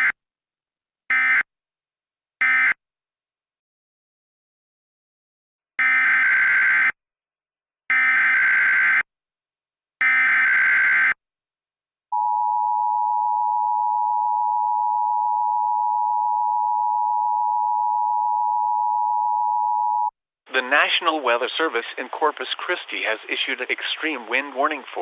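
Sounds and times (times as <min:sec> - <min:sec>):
steady attention tone: 0:12.1 - 0:20.8.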